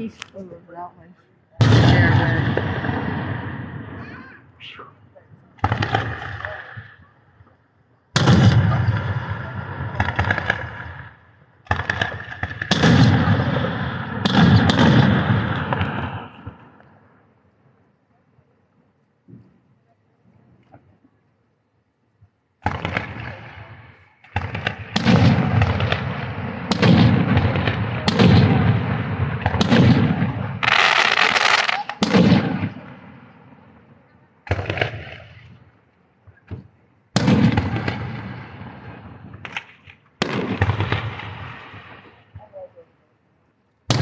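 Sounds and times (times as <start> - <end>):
fireworks booming: 1.6 - 17.2, 22.6 - 42.8
hissing crackle: 30.6 - 32.1.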